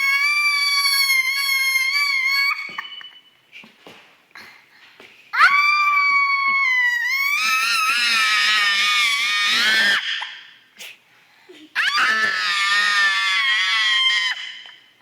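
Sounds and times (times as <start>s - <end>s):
child screaming: 0.0s - 3.0s, 5.4s - 10.4s, 11.8s - 14.7s.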